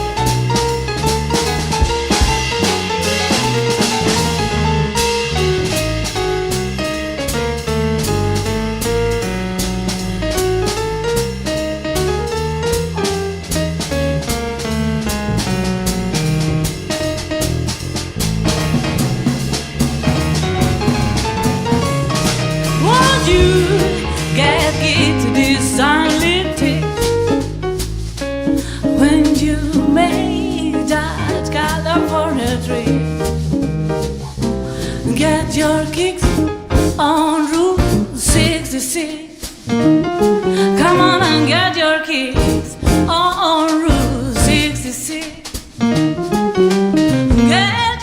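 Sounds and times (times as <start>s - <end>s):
drum hits: 0.0s - 32.5s, 36.2s - 37.1s, 40.8s - 41.6s, 42.4s - 44.8s, 47.0s - 47.7s
sliding lead melody: 0.0s - 37.0s, 39.7s - 43.3s
live band playing: 0.0s - 48.0s
singer with vibrato: 40.8s - 42.4s.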